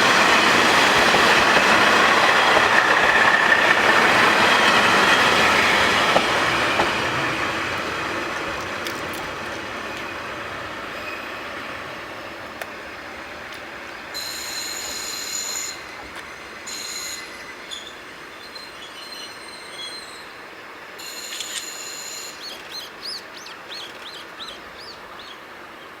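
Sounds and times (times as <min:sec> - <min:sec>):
diesel railcar rumbling: 0:00.0 - 0:26.0
train brakes squealing: 0:00.0 - 0:26.0
bird chirping: 0:22.4 - 0:25.4.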